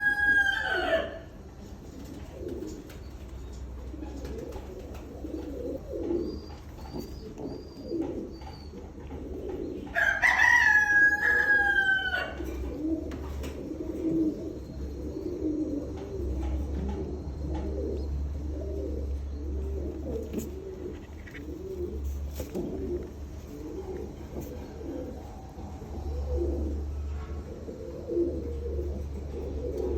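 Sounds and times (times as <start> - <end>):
rooster crowing: 0.0 - 1.3, 9.9 - 12.6
pigeons cooing: 0.0 - 29.9.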